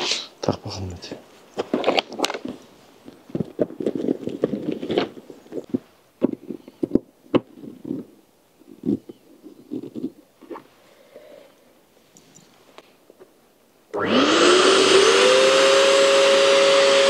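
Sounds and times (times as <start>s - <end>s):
tent parts rustling: 1.2s - 11.0s.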